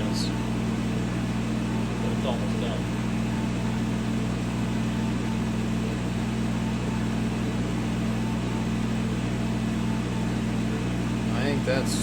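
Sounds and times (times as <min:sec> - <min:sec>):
electrical and fan hum: 0:00.0 - 0:12.0.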